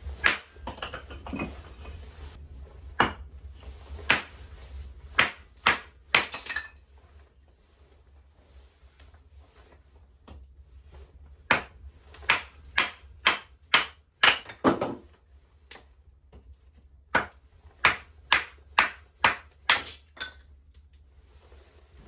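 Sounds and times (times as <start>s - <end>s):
hand tool striking wood: 0.1s - 1.6s, 4.0s - 4.4s, 5.1s - 6.5s, 11.5s - 15.0s, 17.1s - 20.0s.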